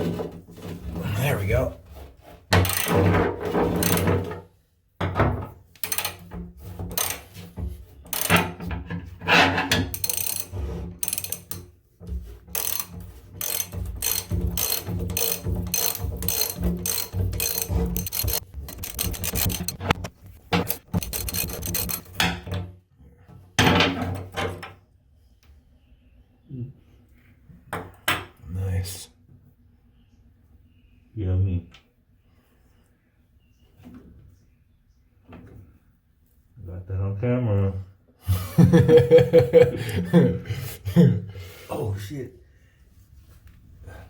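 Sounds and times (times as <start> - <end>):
hand tool rasping and ratcheting: 0.6 - 4.3, 5.8 - 22.2.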